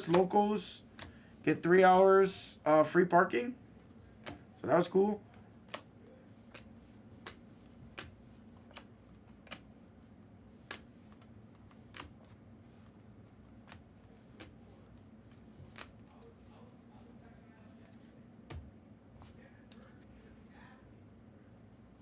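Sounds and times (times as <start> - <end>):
cards clicking down: 0.0 - 0.4, 5.3 - 5.9, 6.5 - 9.7, 10.6 - 12.2
faint steady hum: 0.0 - 22.0.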